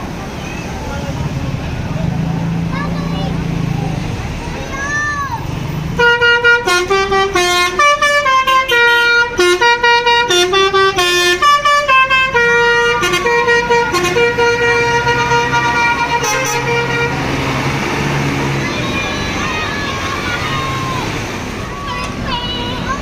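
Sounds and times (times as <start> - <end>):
bus engine running: 0.0 - 23.0
multi-tone air horn melody: 6.0 - 17.5.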